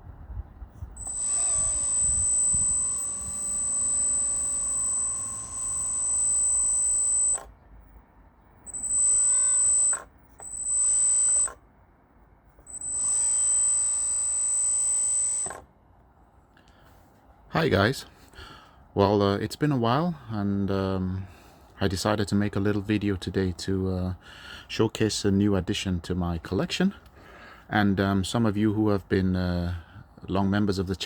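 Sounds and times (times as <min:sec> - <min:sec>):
electric motors whining: 0:00.8 - 0:07.6, 0:08.6 - 0:11.6, 0:12.5 - 0:15.7.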